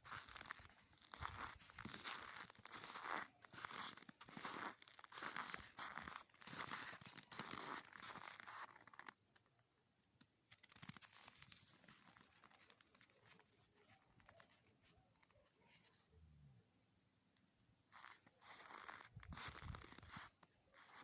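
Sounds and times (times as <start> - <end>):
footsteps crunching in snow: 0.0 - 9.0, 17.9 - 21.0.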